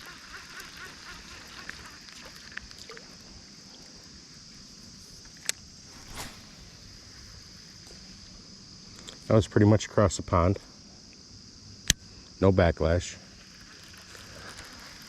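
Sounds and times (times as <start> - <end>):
steady high hiss: 0.0 - 15.0
brief rush of sound: 5.9 - 7.2.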